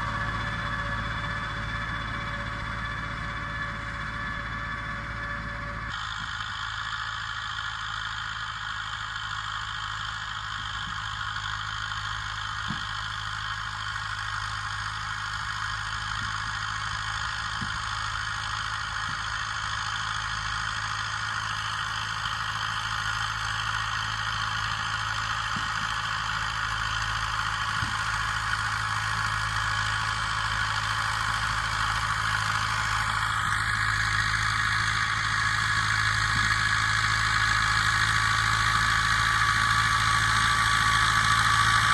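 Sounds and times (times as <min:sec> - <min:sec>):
tractor diesel engine running: 0:00.0 - 0:41.9.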